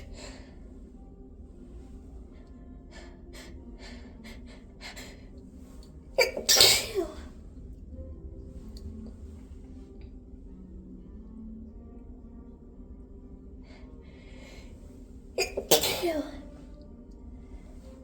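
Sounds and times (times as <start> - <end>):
hitching breaths: 2.2 - 6.0
person sneezing: 6.2 - 7.3, 15.4 - 16.4.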